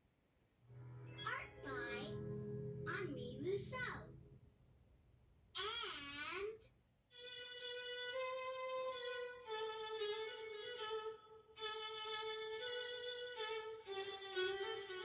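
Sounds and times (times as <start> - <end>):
violin playing slow melody: 0.8 - 3.0, 7.1 - 15.0.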